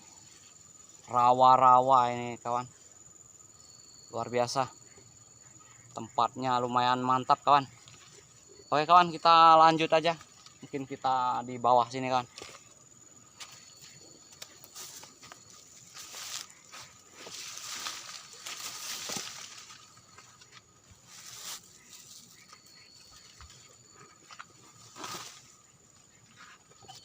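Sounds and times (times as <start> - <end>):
rustling through undergrowth: 12.3 - 26.4.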